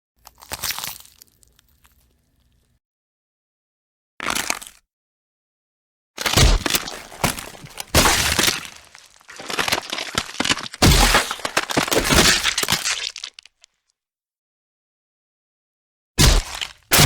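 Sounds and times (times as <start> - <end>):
cracking and breaking noises: 6.2 - 13.7, 16.2 - 17.0.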